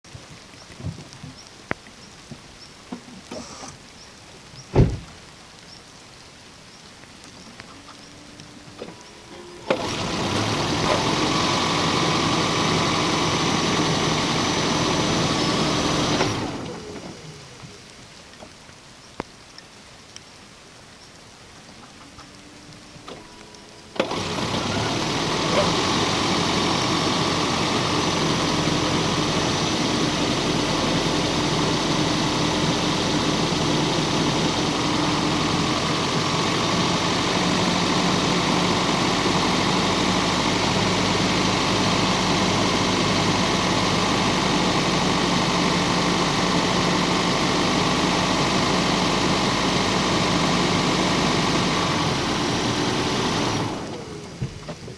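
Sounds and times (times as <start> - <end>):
car engine starting and running: 2.9 - 4.0, 8.3 - 17.9, 23.0 - 54.9.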